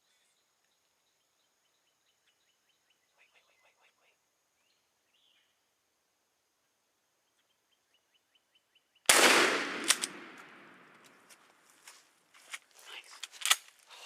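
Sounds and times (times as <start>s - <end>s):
shotgun blast: 9.1s - 10.8s
sharp click: 9.1s - 11.1s.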